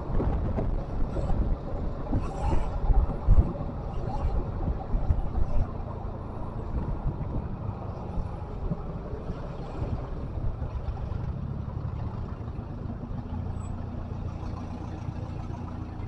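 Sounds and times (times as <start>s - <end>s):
wind on microphone: 0.0s - 12.3s
steady low rumble: 0.0s - 16.0s.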